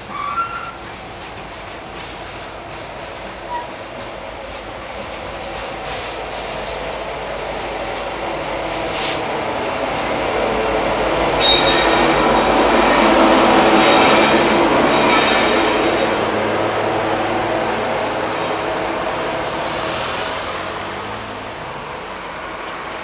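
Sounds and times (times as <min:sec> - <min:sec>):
steel wheels squealing on rail: 0:00.0 - 0:01.2, 0:03.1 - 0:04.0, 0:08.7 - 0:09.3, 0:11.2 - 0:16.4
freight train rolling past: 0:00.0 - 0:23.0.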